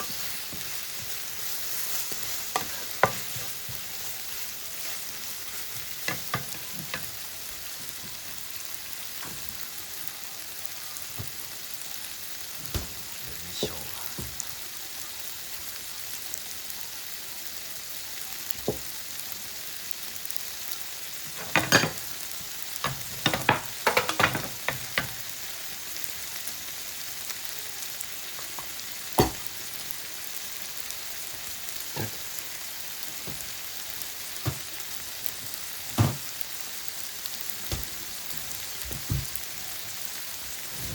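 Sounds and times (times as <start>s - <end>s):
noodles sizzling on a pan: 0.0s - 40.9s.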